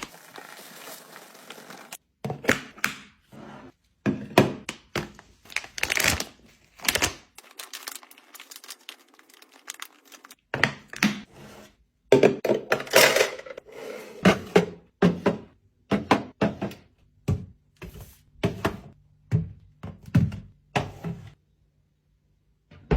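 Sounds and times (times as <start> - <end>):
items knocking on fridge shelves: 14.2 - 21.4.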